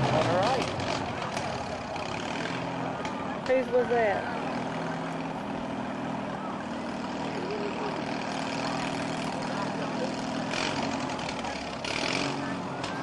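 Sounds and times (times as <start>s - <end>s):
faint crowd voices: 0.0s - 13.0s
riding mower engines running: 0.0s - 13.0s.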